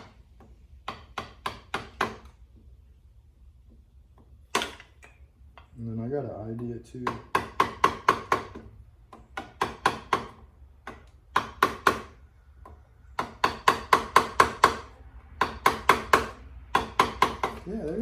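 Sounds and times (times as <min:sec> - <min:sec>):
hammer tapping: 0:00.0 - 0:02.4, 0:06.6 - 0:18.0.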